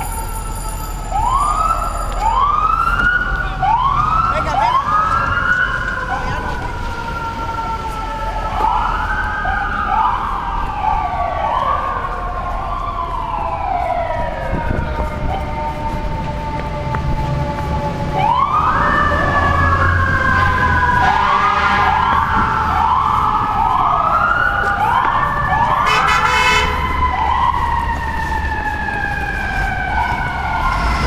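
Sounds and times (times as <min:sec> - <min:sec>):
fire truck sirens wailing: 0:00.0 - 0:31.0
truck engines rumbling: 0:00.0 - 0:31.0.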